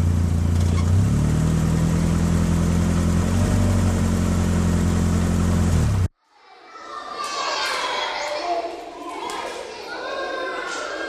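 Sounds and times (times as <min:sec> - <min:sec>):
engine running: 0:00.0 - 0:06.1.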